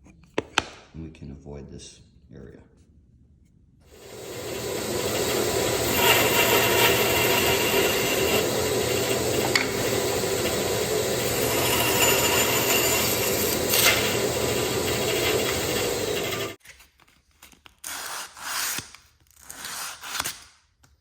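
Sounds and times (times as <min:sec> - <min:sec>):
power saw cutting wood: 0:03.9 - 0:16.6.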